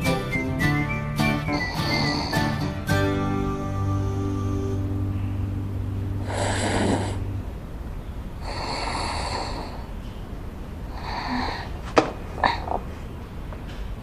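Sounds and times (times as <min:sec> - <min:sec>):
soft music: 0:00.0 - 0:07.8
woman snoring: 0:01.5 - 0:02.6, 0:06.2 - 0:07.3, 0:08.4 - 0:09.9, 0:10.9 - 0:11.7.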